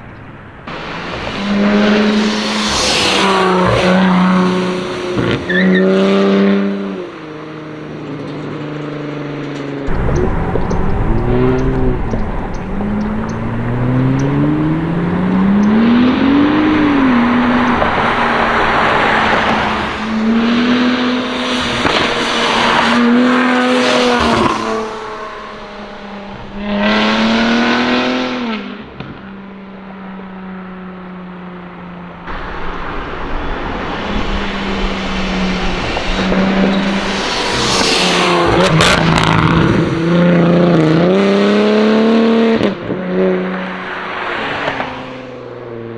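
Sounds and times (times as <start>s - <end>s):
car engine accelerating hard: 0.6s - 8.1s, 9.9s - 45.3s
exhaust cracks: 9.9s - 26.5s, 32.3s - 40.4s.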